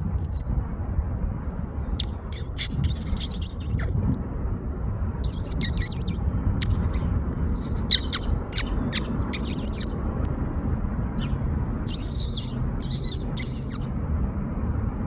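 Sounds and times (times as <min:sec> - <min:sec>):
steady low rumble: 0:00.0 - 0:15.0
songbirds chirping: 0:01.8 - 0:04.1, 0:05.2 - 0:10.1, 0:11.1 - 0:13.8.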